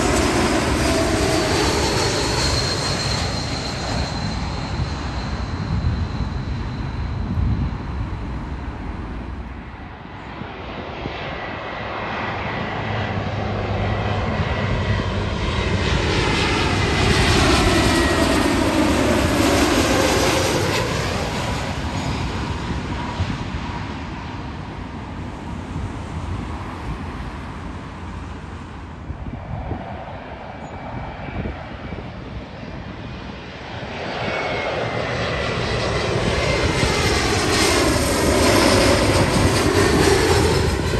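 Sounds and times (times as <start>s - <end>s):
jet airliner passing overhead: 0.0s - 40.9s.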